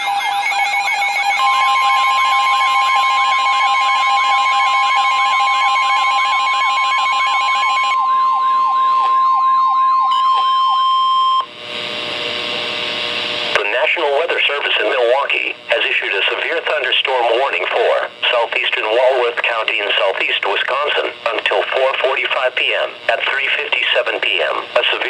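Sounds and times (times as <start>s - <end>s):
sweeping siren-like alarm: 0.0s - 11.6s
steady warning tone: 0.0s - 25.0s
radio hiss: 11.6s - 25.0s.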